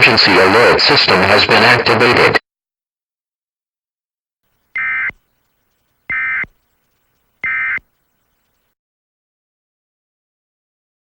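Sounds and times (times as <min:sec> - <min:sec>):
two-tone digital data buzz: 0:04.7 - 0:08.6.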